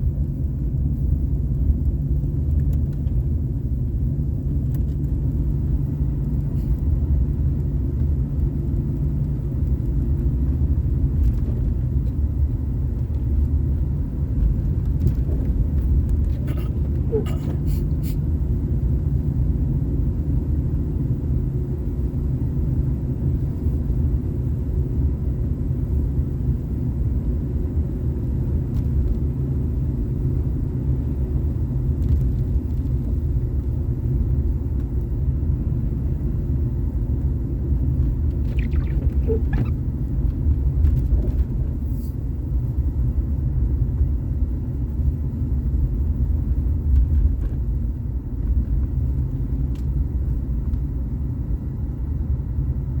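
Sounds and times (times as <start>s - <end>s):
car engine and road noise: 0.0s - 53.0s
faint brief squeaks: 38.4s - 39.8s.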